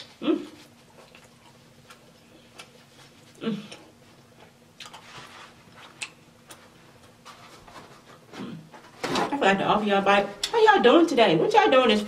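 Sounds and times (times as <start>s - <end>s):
person chewing pizza: 0.0s - 8.7s.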